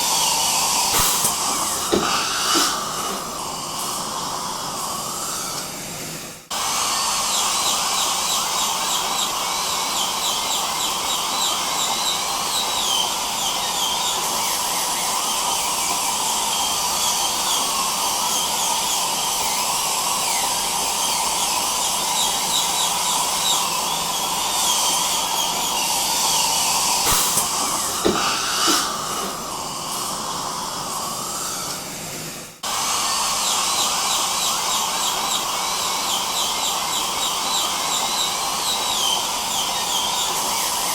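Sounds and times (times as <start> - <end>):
dental suction hiss: 0.0 - 5.7, 6.5 - 31.9
dental drill whining: 0.0 - 40.9.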